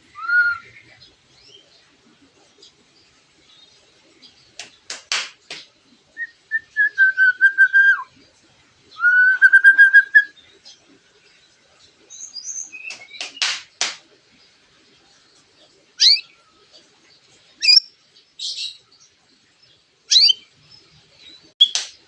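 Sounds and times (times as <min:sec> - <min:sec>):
long whistled bird phrases: 0:00.0 - 0:00.9, 0:06.2 - 0:08.1, 0:09.0 - 0:10.4, 0:12.2 - 0:13.7, 0:16.0 - 0:16.4, 0:17.6 - 0:17.9, 0:20.1 - 0:20.5
songbird singing: 0:00.0 - 0:22.0
sharp bird chips: 0:12.5 - 0:14.0, 0:21.6 - 0:22.0.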